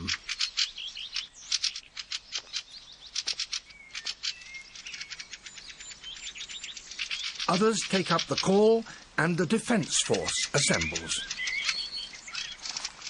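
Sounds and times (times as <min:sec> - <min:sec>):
thin whistled bird notes: 0:00.0 - 0:07.6, 0:10.2 - 0:13.0
bird harsh chattering alarm call: 0:00.0 - 0:13.0.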